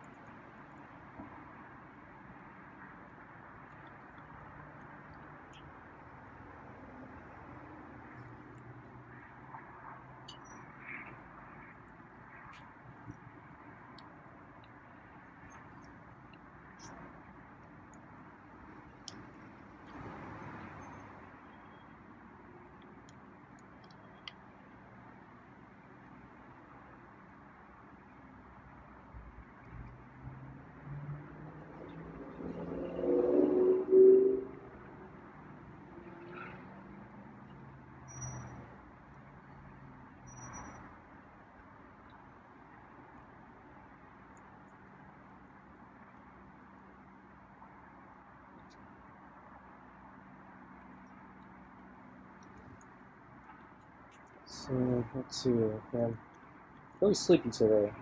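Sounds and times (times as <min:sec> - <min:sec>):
distant road traffic hum: 0:00.0 - 0:58.0
car passing: 0:29.4 - 0:41.2
small sharp ticks: 0:44.2 - 0:55.0.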